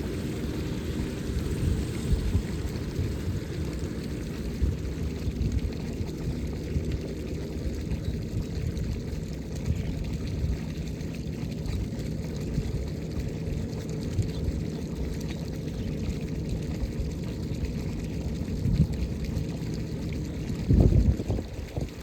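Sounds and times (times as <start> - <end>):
combine harvester rumbling: 0.0 - 7.2.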